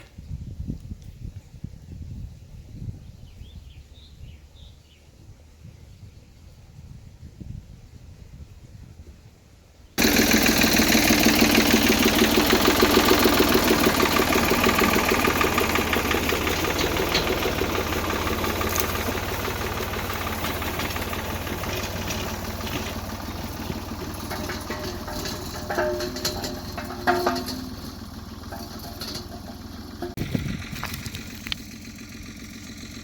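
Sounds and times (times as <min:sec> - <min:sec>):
vehicle engine running: 0:10.0 - 0:33.0.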